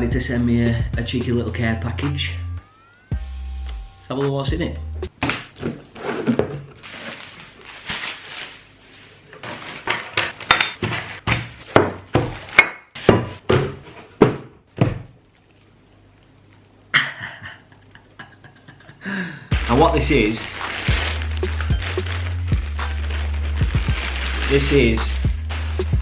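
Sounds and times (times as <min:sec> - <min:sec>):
packaging rustling and tearing: 0:05.5 - 0:11.7, 0:19.6 - 0:26.0
box knocks and thunks: 0:13.1 - 0:15.1.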